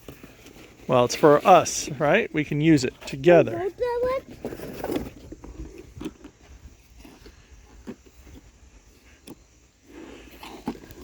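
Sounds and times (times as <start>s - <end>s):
plastic case and cardboard handling: 2.4s - 7.3s.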